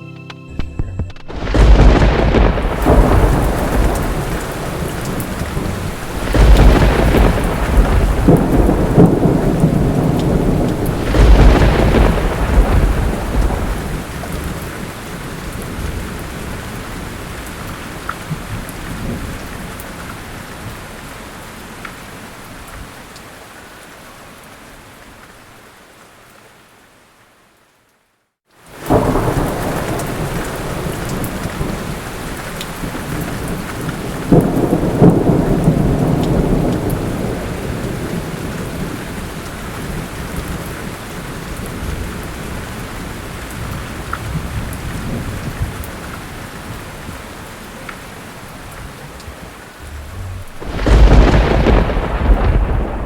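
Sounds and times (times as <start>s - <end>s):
rolling thunder: 0.8s - 14.8s, 28.9s - 32.0s, 32.9s - 40.5s, 48.0s - 53.0s
heavy rain: 1.2s - 27.9s, 28.5s - 53.0s.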